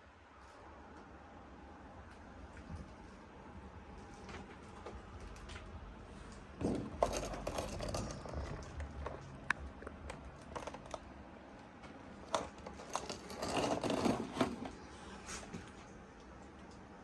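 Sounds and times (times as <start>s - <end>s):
handling clicks and rustles: 6.6s - 11.2s, 12.2s - 14.8s.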